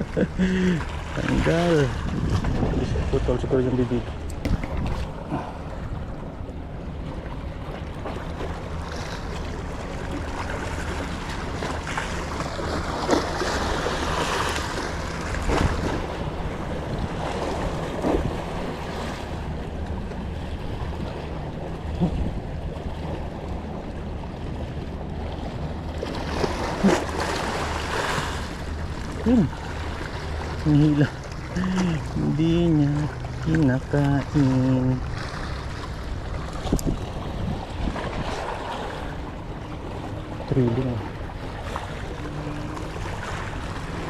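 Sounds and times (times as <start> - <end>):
sea water washing: 0.0 - 44.0
wind buffeting microphone: 1.4 - 6.8, 14.1 - 25.9, 33.5 - 40.5.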